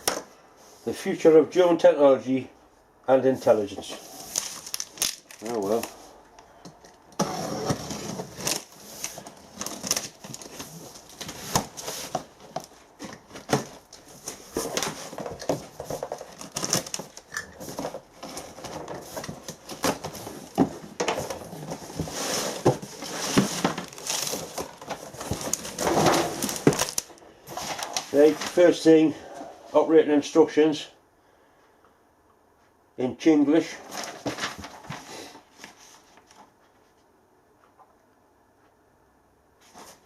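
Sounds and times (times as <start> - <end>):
cardboard packaging being handled: 3.8 - 6.2, 7.2 - 28.8, 33.8 - 36.4.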